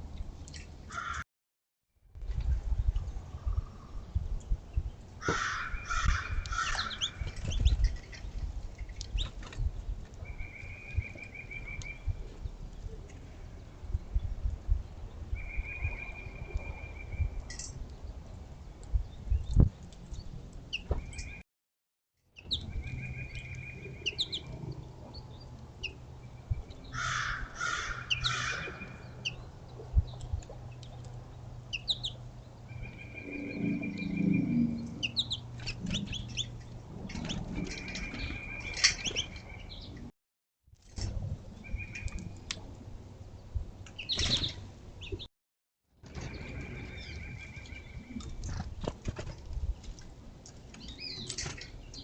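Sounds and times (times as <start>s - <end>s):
small songbirds chirping: 5.8s - 21.4s, 22.4s - 40.1s, 41.5s - 42.6s, 43.2s - 45.3s, 46.2s - 48.9s, 49.6s - 52.0s.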